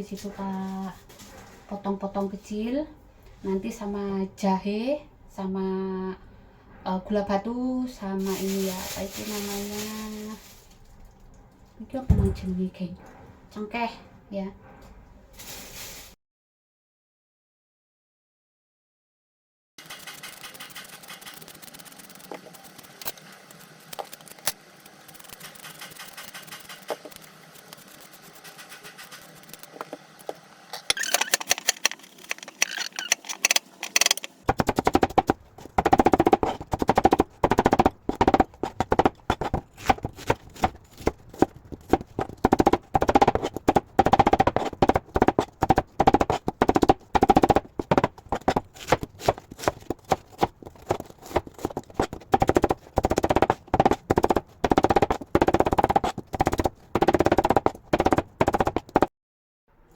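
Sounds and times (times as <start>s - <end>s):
knife chopping on cutting board: 34.5s - 59.1s.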